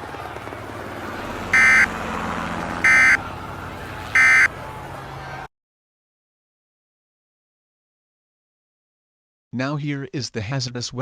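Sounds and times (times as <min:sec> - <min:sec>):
data bursts: 0:01.6 - 0:01.9, 0:02.8 - 0:03.2, 0:04.2 - 0:04.5.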